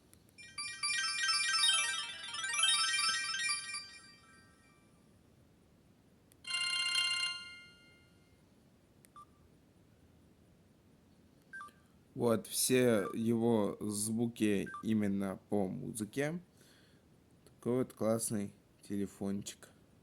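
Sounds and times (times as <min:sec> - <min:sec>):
high electronic phone melody: 0:00.4 - 0:04.7, 0:06.5 - 0:08.1.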